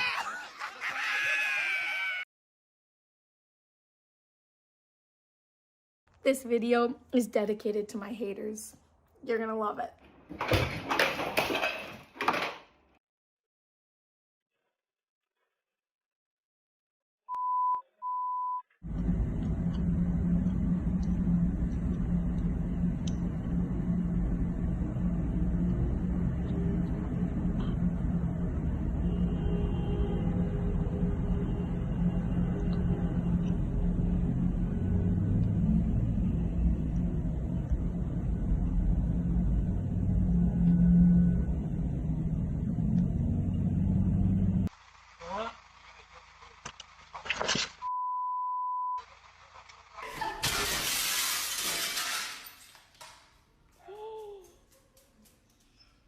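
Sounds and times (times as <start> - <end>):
steady low rumble: 18.8 - 44.7
engine running: 18.8 - 47.8, 49.0 - 50.2.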